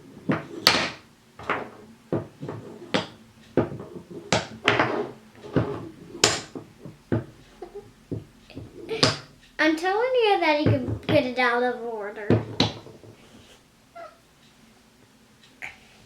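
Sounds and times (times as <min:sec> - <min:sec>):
wooden toy pieces knocking: 0:00.3 - 0:09.3, 0:12.3 - 0:13.2.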